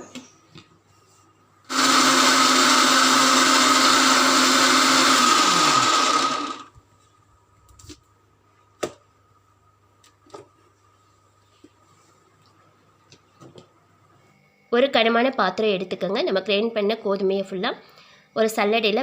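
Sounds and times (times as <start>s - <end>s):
mixer grinder running: 1.7s - 6.8s.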